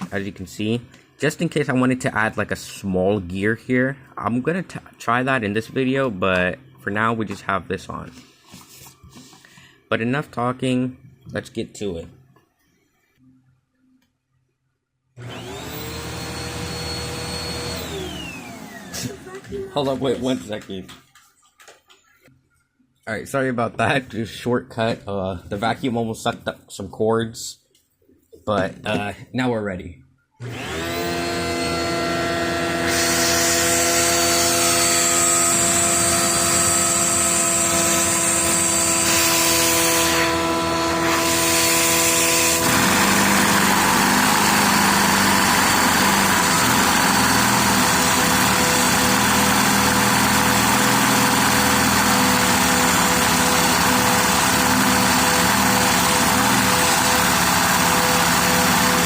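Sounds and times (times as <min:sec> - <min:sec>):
vacuum cleaner motor whine: 0:15.2 - 0:20.2, 0:30.4 - 0:39.0, 0:39.6 - 0:59.0.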